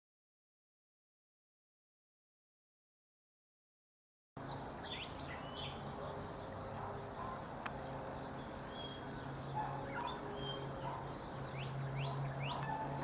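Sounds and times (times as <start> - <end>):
birds chirping and whistling: 4.4 - 13.0.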